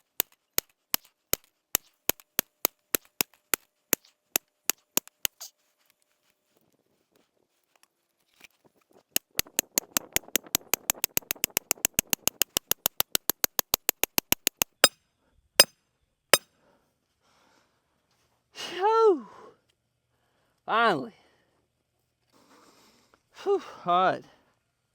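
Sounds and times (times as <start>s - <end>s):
rapid metallic strikes on rod: 9.2s - 15.0s.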